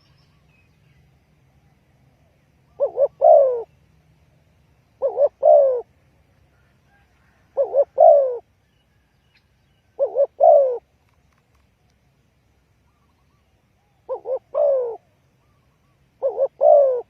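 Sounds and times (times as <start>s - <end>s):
dove cooing: 2.2s - 3.8s, 5.0s - 5.9s, 6.5s - 8.5s, 9.9s - 10.9s, 13.0s - 17.0s.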